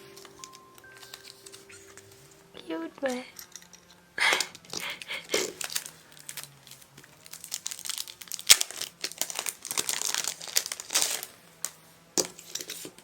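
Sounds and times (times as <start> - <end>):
packaging crinkling and rustling: 0.0 - 2.4, 3.1 - 13.0.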